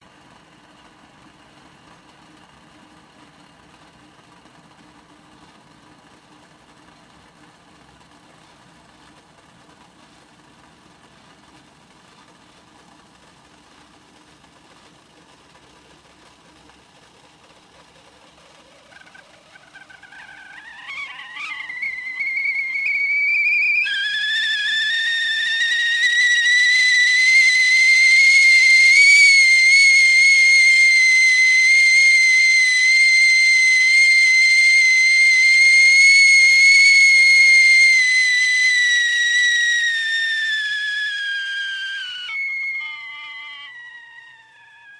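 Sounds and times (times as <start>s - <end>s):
faint steady noise: 0.0s - 44.9s
kettle whistling: 13.8s - 44.9s.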